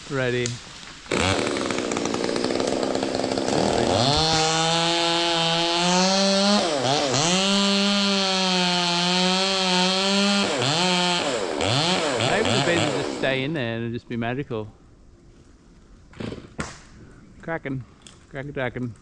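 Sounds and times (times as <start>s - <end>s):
chainsaw cutting wood: 1.0s - 13.5s.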